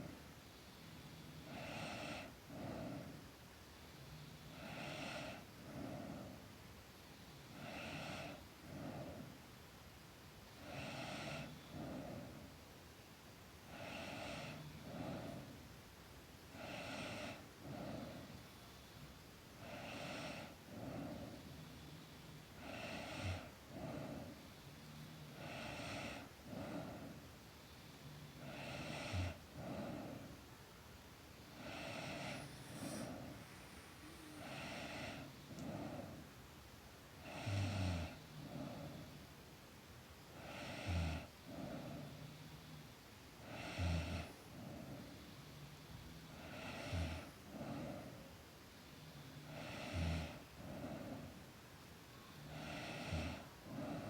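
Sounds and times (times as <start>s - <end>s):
girl snoring: 25.2s - 27.2s, 28.3s - 30.3s, 31.5s - 36.3s, 37.2s - 39.1s, 43.4s - 45.2s, 45.8s - 48.3s, 49.2s - 51.4s, 52.4s - 54.0s.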